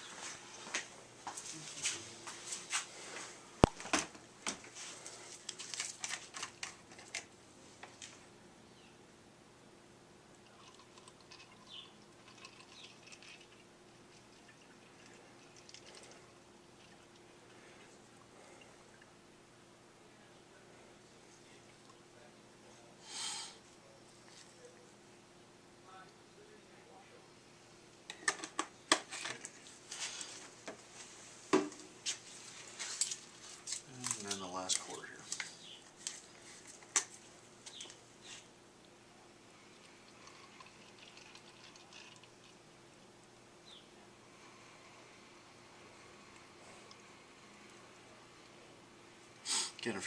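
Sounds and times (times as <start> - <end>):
faint steady hum: 0.0 - 50.0.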